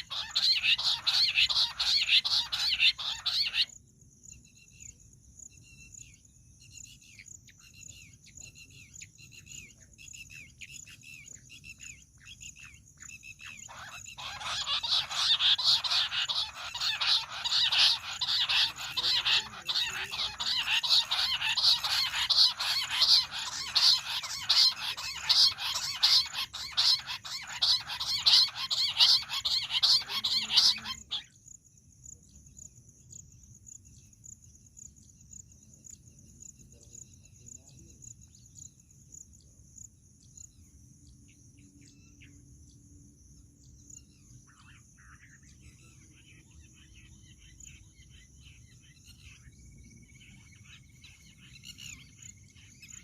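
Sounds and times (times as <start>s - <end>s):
quail calling: 0.0s - 3.7s, 13.4s - 31.3s.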